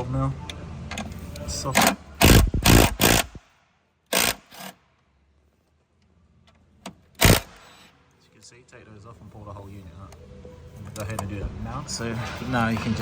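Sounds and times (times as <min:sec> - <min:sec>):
socket wrench working on bolts: 0:01.8 - 0:03.4, 0:04.1 - 0:04.8, 0:07.2 - 0:07.7.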